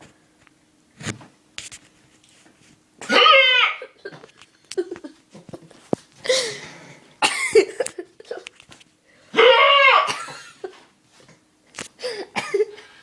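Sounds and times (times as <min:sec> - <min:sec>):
man hiccuping loudly: 0:03.0 - 0:04.1, 0:09.4 - 0:10.4.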